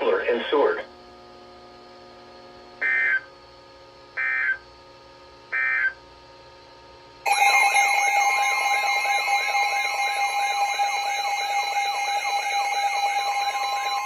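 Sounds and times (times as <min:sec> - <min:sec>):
warbling electronic alert tone: 0:07.3 - 0:14.0.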